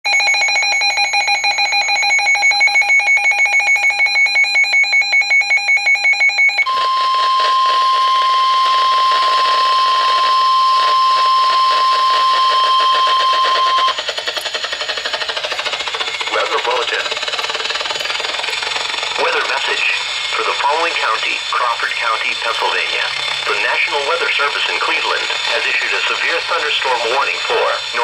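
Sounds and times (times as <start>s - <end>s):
rapid pulsing electronic alarm beeps: 0.1s - 28.0s
steady warning tone: 0.1s - 28.0s
radio hiss: 16.2s - 17.3s, 19.1s - 28.0s.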